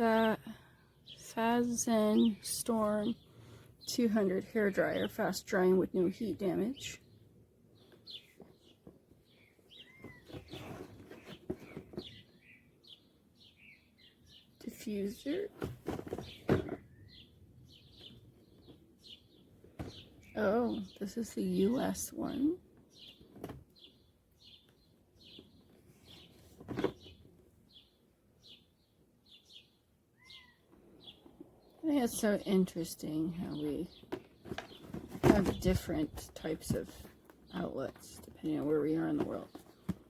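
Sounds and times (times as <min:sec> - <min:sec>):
small birds chirping: 0:00.0 - 0:40.0
objects knocking and rustling: 0:09.9 - 0:12.2, 0:15.5 - 0:17.0, 0:26.2 - 0:27.4, 0:34.0 - 0:38.4, 0:39.1 - 0:40.0.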